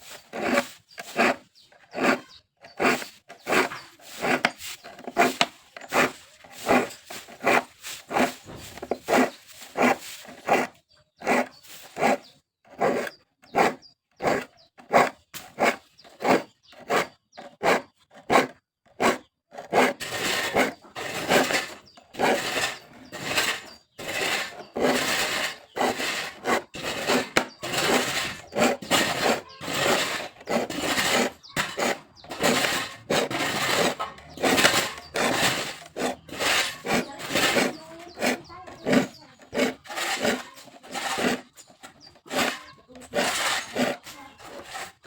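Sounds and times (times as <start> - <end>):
hand saw cutting wood: 0.0 - 45.0.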